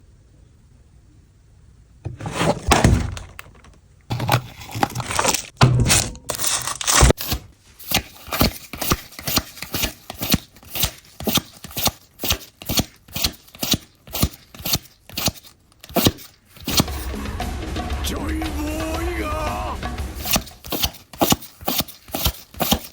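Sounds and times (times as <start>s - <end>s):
foil wrapper crinkling and tearing: 4.1s - 16.8s, 20.2s - 22.9s
cards being flicked through: 6.9s - 17.1s, 19.9s - 22.9s.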